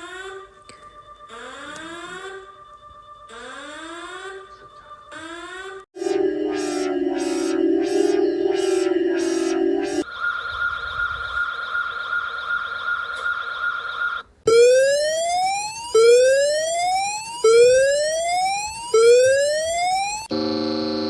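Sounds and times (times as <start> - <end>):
warbling high alarm tone: 0.0 - 21.0
rising siren sweeps: 1.2 - 2.6, 3.3 - 21.0.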